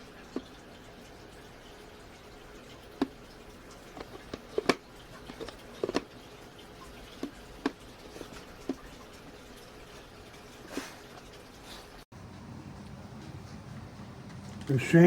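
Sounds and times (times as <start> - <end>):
plastic parts clicking and knocking: 3.8 - 6.2.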